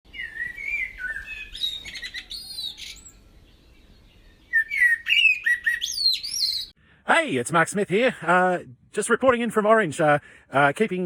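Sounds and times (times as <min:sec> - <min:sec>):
songbird warbling: 0:00.1 - 0:06.8.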